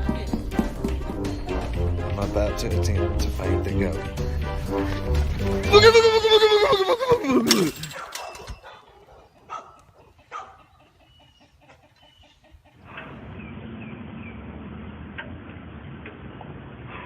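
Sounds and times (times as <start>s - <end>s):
chickens clucking: 5.8s - 14.3s.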